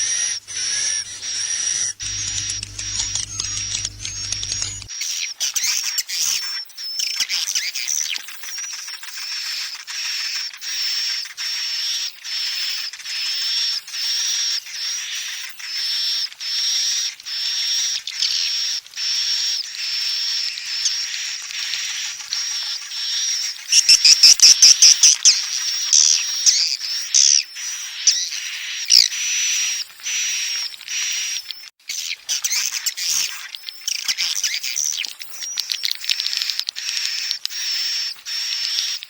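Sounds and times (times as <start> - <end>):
swiftlet calls twittering: 0.0 - 4.9
steady high whistle-like tone: 0.3 - 4.9.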